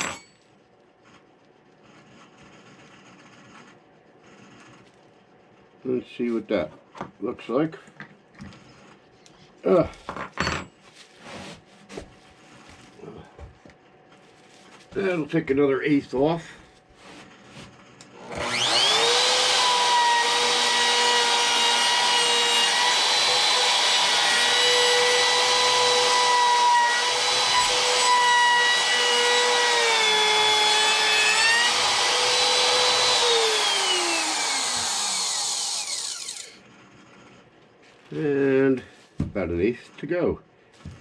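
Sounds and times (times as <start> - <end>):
wood router whining: 18.2 - 36.7.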